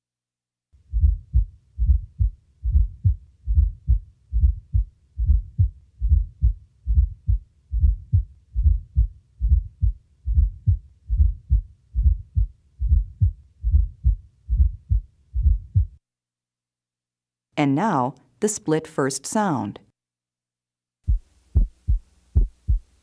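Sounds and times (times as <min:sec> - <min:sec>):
heart sounds with gallop: 0:00.9 - 0:16.0, 0:21.1 - 0:23.0.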